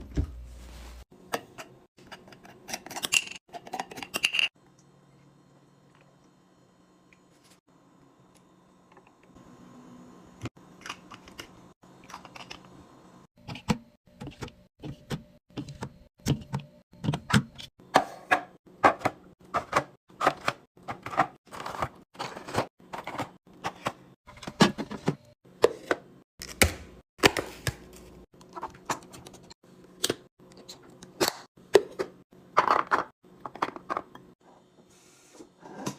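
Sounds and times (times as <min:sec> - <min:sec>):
items clinking and knocking in fridge: 0:13.4 - 0:30.3, 0:31.2 - 0:34.3.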